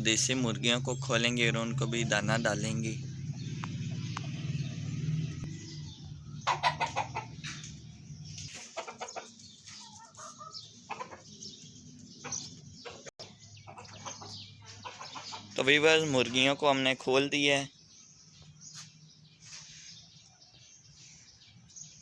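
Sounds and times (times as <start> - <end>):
hens clucking: 5.6 - 16.5.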